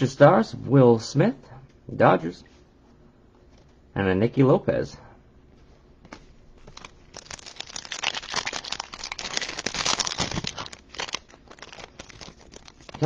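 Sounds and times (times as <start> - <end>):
foil wrapper tearing and crinkling: 6.8 - 13.0.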